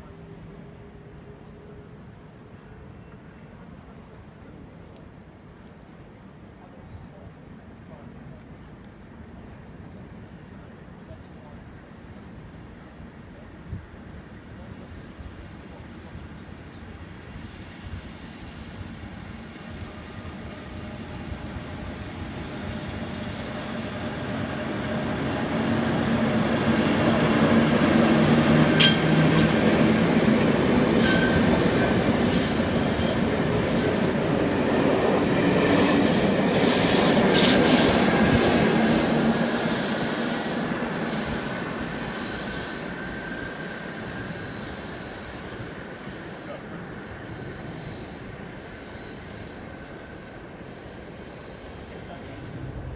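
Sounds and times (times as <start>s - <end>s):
train passing: 9.3s - 52.9s
high wheel squeal: 31.0s - 34.0s, 35.6s - 52.9s.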